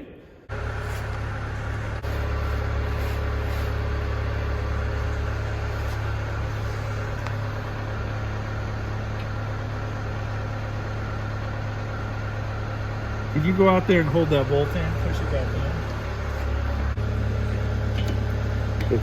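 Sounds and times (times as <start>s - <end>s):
engine idling: 0.5s - 19.0s.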